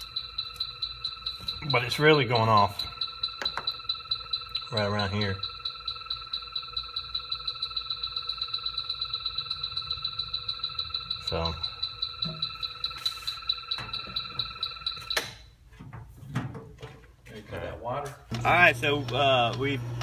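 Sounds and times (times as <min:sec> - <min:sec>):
leak detector beeping rapidly: 0:00.0 - 0:15.6.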